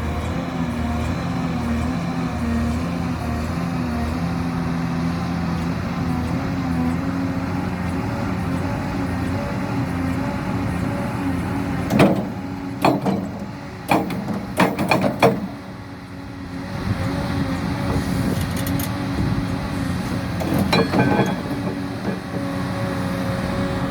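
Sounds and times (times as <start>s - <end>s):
diesel engine running: 0.0s - 23.9s
hydraulic breaker hammer knocks: 11.9s - 15.7s, 20.4s - 22.8s.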